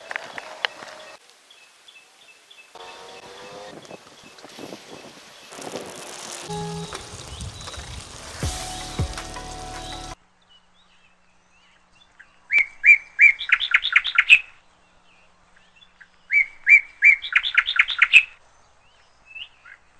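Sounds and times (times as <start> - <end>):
songbird singing: 0.0 - 12.4
background music: 6.2 - 10.2.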